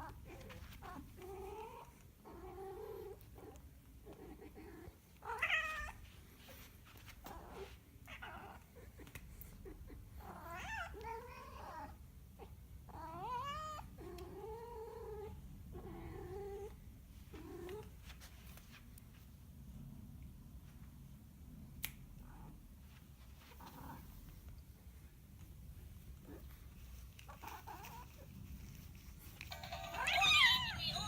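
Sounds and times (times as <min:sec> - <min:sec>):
cat yowling: 0:29.9 - 0:31.0.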